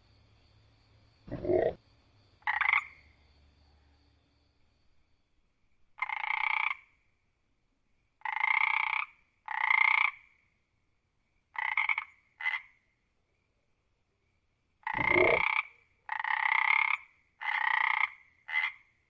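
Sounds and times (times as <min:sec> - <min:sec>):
frog croaking: 0:01.3 - 0:01.8, 0:02.4 - 0:03.1, 0:06.0 - 0:07.0, 0:08.2 - 0:10.4, 0:11.5 - 0:12.8, 0:14.8 - 0:18.9.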